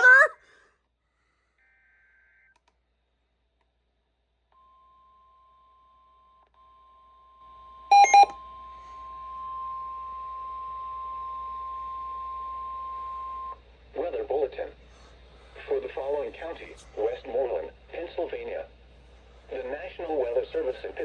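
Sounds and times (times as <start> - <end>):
faint hum: 7.5 - 21.0
short burst of beeps: 7.9 - 8.3
single-pitch warning alarm tone: 7.9 - 13.6.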